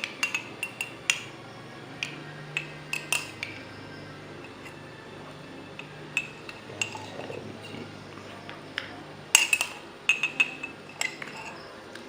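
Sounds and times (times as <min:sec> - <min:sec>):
metal spoon clinking on glass: 0:00.0 - 0:01.4, 0:02.0 - 0:04.8, 0:05.7 - 0:07.9, 0:08.8 - 0:12.0.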